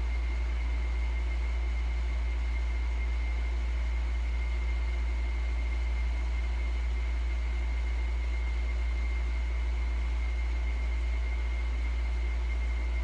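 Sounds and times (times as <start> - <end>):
high constant whine: 0.0 - 13.0.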